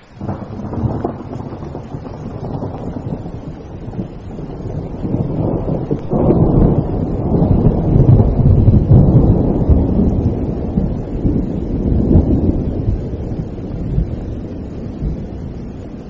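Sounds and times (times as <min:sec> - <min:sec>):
rolling thunder: 0:00.0 - 0:16.0
steady rain: 0:00.0 - 0:16.0.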